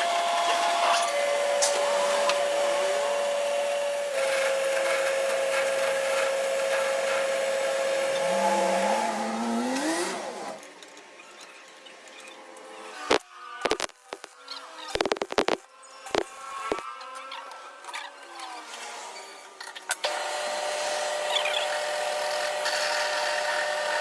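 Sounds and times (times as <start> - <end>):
lathe cutting tool scraping metal: 0.4 - 10.6.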